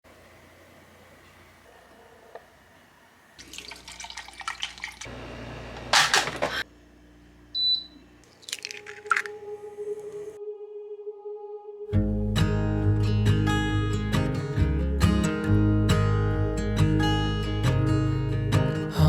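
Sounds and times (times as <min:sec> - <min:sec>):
water running and splashing: 0:03.4 - 0:05.1, 0:08.3 - 0:09.3.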